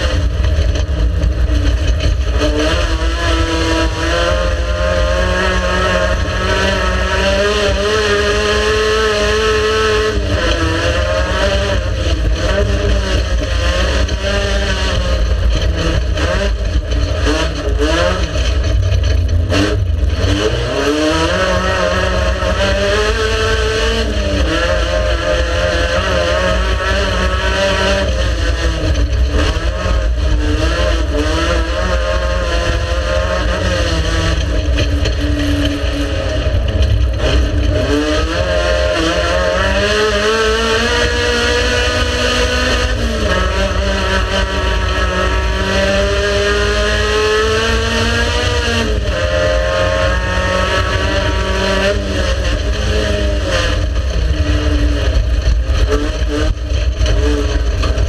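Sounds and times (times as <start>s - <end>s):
race car engine shifting gears: 0.0s - 58.0s.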